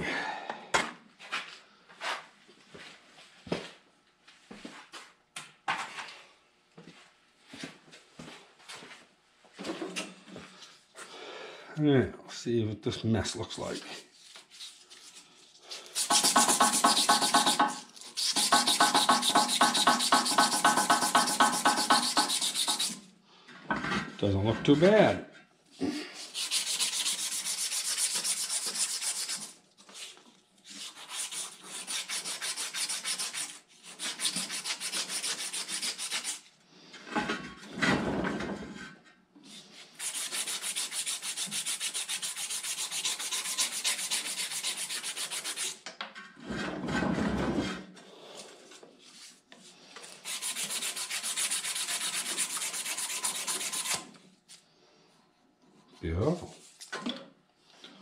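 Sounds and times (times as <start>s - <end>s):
rapid scrubbing on metal: 16.0s - 23.0s, 39.9s - 45.8s, 50.2s - 54.0s.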